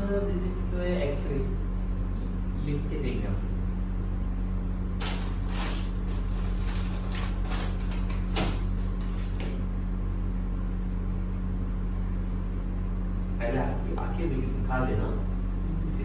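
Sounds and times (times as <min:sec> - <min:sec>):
objects scraping and rustling: 0:05.0 - 0:09.6.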